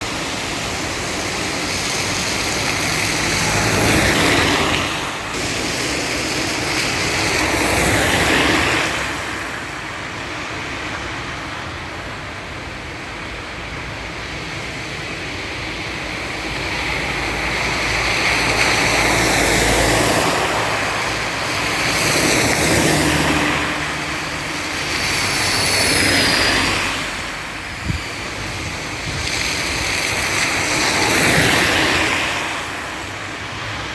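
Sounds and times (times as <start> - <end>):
rain on wet street: 0.0 - 33.9
tyres hissing on wet road: 0.0 - 33.9.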